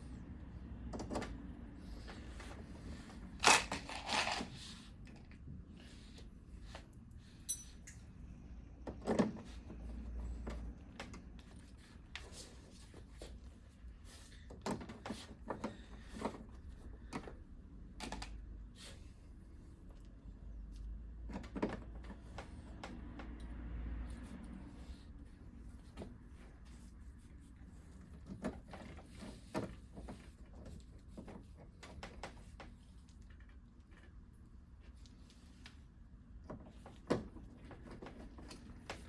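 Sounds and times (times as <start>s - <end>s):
tools clicking and tapping: 7.5s - 8.1s.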